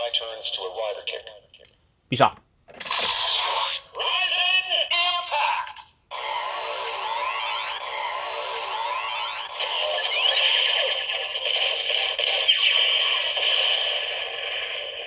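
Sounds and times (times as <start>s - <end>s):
toy electronic sound effect: 2.8s - 5.5s, 6.1s - 15.0s.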